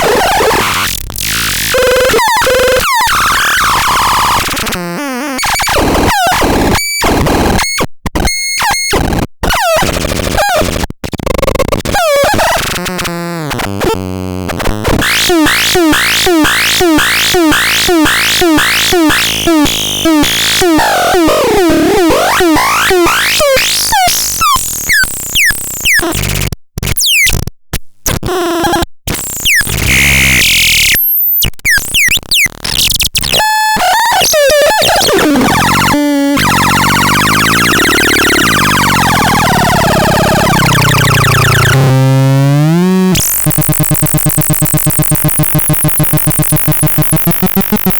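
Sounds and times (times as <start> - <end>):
glitchy synthesizer stuttering: 34.2 - 47.9
synthesizer pitch sweeps: 35.1 - 47.9
warbling synthesizer tone: 35.1 - 47.9.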